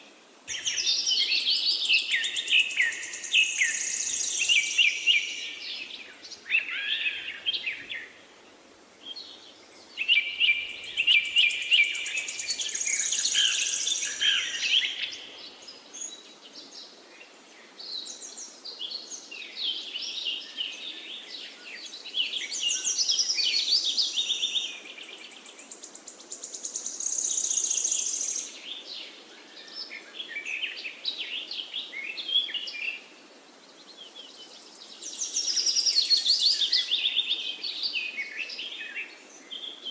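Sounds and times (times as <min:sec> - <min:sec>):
faint steady hiss: 0:00.0 - 0:39.9
birds chirping and singing: 0:00.5 - 0:08.1, 0:33.9 - 0:39.9.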